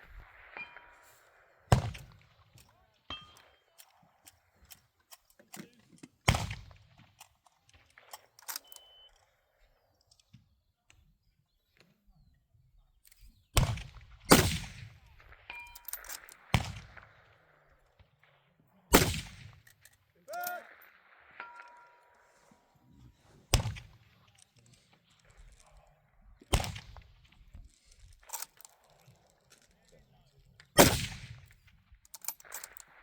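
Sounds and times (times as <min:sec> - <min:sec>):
metallic ring of steel targets: 0:00.5 - 0:01.1, 0:03.1 - 0:03.6, 0:15.5 - 0:16.4, 0:21.4 - 0:22.5
rifle shots with echo: 0:13.6 - 0:17.6, 0:18.9 - 0:19.8, 0:23.5 - 0:24.2, 0:26.5 - 0:27.3, 0:30.8 - 0:31.6.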